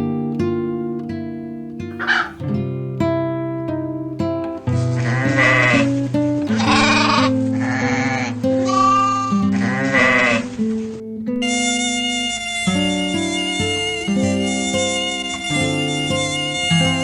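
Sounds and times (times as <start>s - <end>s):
animal bleating: 2.0s - 2.4s, 4.7s - 10.6s, 11.4s - 17.0s.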